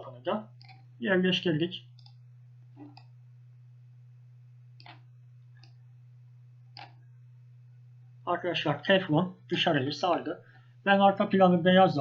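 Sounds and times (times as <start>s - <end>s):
low electrical hum: 0.0s - 12.0s
computer mouse clicks: 0.5s - 0.9s, 1.9s - 3.2s, 4.8s - 5.8s, 6.7s - 7.0s.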